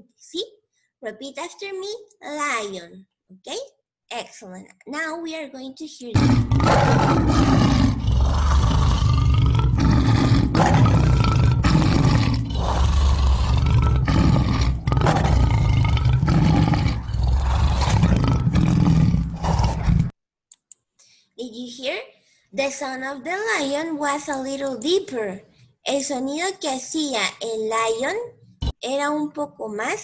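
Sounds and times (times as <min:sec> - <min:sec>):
lion roaring: 0:06.2 - 0:20.1.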